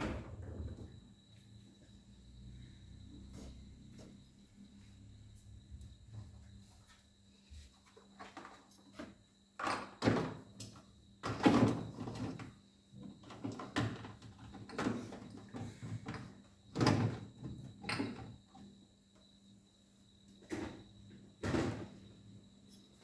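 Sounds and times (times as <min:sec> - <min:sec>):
faint refrigerator hum: 0:00.0 - 0:23.0.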